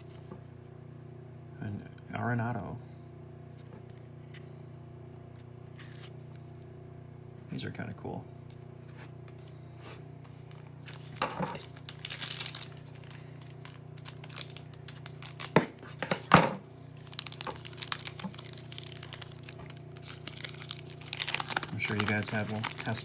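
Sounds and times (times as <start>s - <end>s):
wrapper crinkling and tearing: 10.5s - 23.0s
sharp wrapper snaps: 11.6s - 15.6s, 17.1s - 23.0s.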